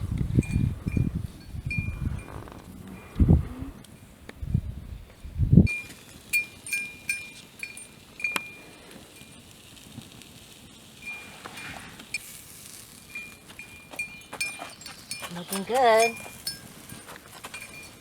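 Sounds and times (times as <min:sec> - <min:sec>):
light metallic clinks: 0:05.7 - 0:09.5, 0:13.1 - 0:18.0
soft rustle: 0:05.7 - 0:18.0.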